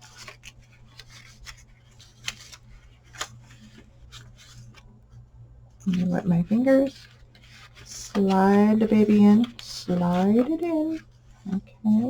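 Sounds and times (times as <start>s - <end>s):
paper rubbing and scraping: 0.0s - 4.9s, 5.9s - 11.6s.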